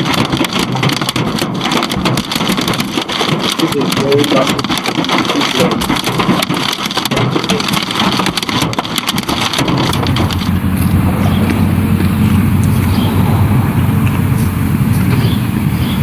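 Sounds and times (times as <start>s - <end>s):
hailstones rattling on hard surfaces: 0.0s - 16.0s
steady low rumble: 9.6s - 16.0s.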